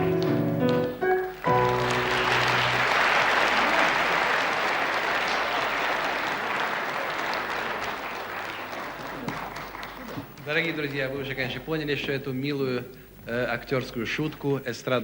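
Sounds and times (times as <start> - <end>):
audience applauding: 0.0 - 11.3.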